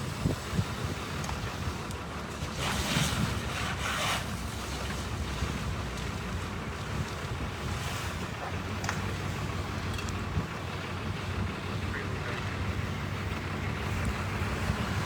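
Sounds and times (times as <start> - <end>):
wind buffeting microphone: 0.0 - 1.9, 12.7 - 15.0.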